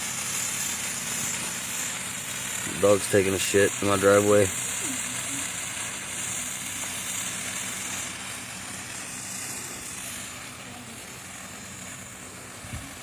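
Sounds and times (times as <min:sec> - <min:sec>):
firework fizzing: 0:00.0 - 0:13.0.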